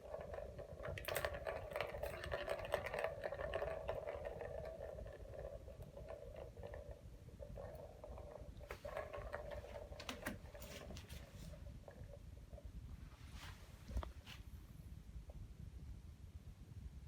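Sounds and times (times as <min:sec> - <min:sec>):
ball clicks and taps: 0:00.0 - 0:12.2
ball rolling in plastic toy: 0:00.0 - 0:12.7.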